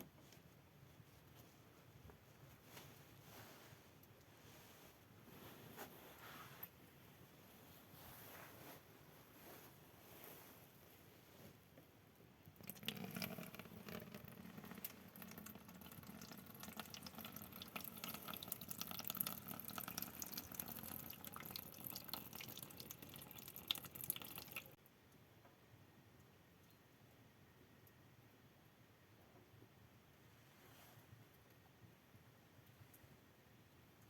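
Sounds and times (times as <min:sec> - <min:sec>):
water running and splattering: 0:12.6 - 0:24.8.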